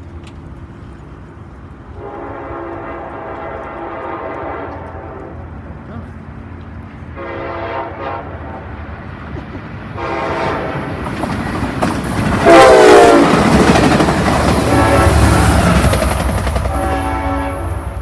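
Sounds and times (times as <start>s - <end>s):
rumble and clatter of passing train: 0.0s - 18.0s
locomotive horn blasts: 2.0s - 5.5s, 7.1s - 8.7s, 10.0s - 11.0s, 12.4s - 13.5s, 14.6s - 16.0s, 16.7s - 18.0s.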